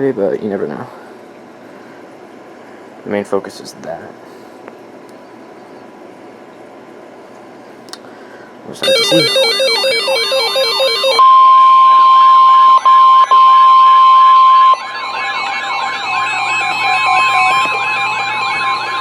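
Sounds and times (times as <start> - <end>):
electronic siren wail: 8.8 - 19.0
steady high alarm tone: 8.8 - 19.0.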